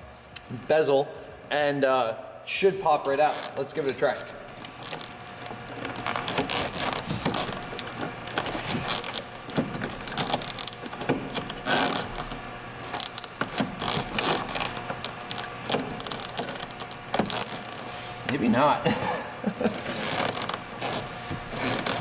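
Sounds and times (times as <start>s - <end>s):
plastic trim scraping: 4.5s - 18.4s, 19.6s - 22.0s.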